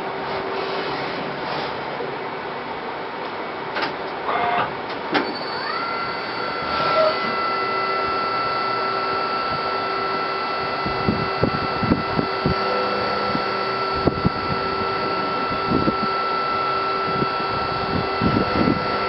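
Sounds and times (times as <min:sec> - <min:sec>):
motor whine: 0:04.2 - 0:19.0.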